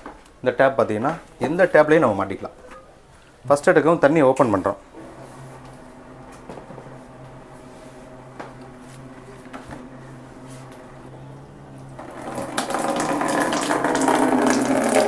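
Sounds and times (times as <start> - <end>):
faint steady hum: 0.0 - 15.0
water running and splashing: 12.0 - 15.0.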